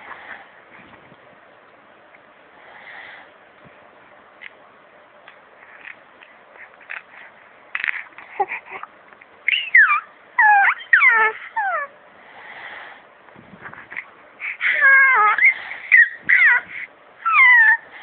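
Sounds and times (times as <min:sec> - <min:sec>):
pet crying high-pitched: 0:09.5 - 0:11.9, 0:14.5 - 0:17.9.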